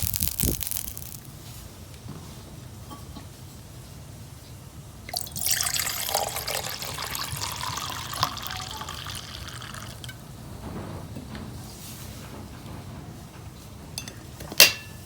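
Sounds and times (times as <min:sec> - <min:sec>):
water running: 0:05.1 - 0:10.3.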